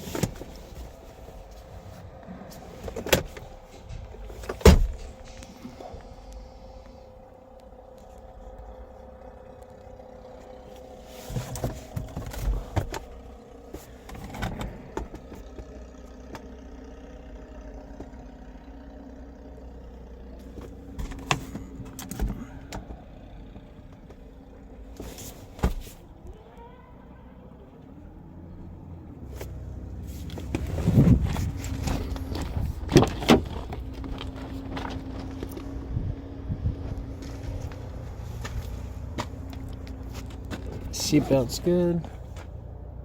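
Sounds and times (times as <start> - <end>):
knocks and clicks of handling: 0.0 - 5.8, 11.3 - 13.2, 20.4 - 24.2, 30.2 - 35.8
steady low hum: 0.0 - 15.4.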